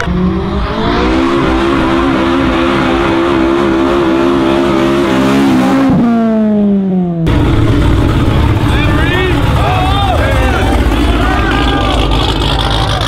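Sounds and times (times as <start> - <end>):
car engine at high revs: 0.0 - 13.0.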